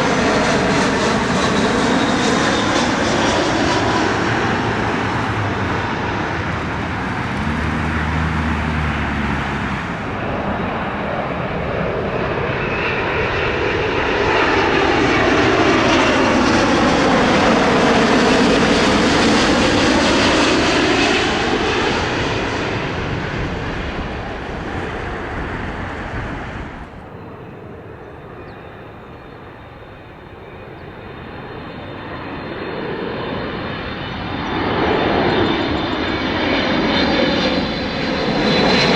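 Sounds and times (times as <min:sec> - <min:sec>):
jet engines passing close: 0:00.0 - 0:38.9.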